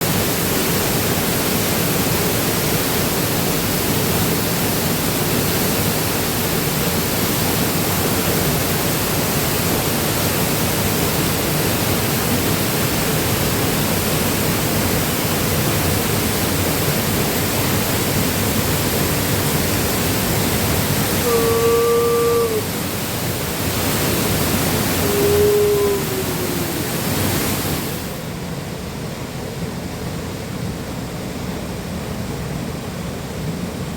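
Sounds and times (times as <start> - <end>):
waterfall rushing: 0.0 - 28.4
brief low tones: 21.2 - 22.7, 25.0 - 27.2.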